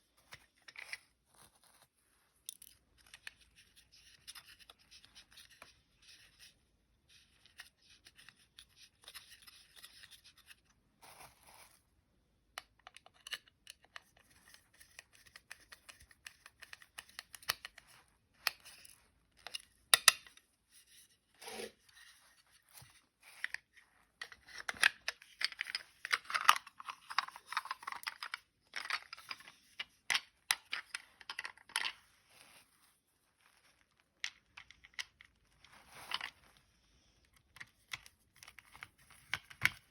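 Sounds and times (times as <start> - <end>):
scratchy scraping and rustling: 0.2 - 2.4
plastic parts clicking and tapping: 12.5 - 20.5, 23.4 - 32.0, 34.2 - 35.4, 37.4 - 39.9.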